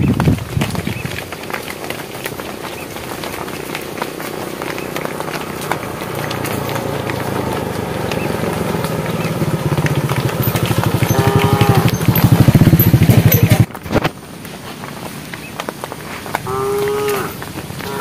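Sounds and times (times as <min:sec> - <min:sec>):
small engine running: 0:02.4 - 0:13.7.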